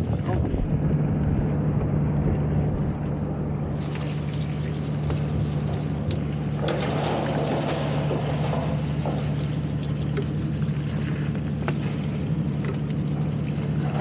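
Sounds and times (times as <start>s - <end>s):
stationary engine running: 0.0s - 10.3s.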